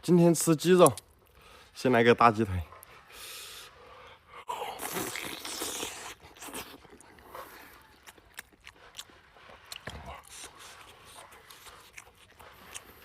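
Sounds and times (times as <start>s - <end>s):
chewing with small clicks: 0.6s - 1.7s, 5.0s - 13.0s
tearing at chicken drumstick: 4.8s - 6.9s.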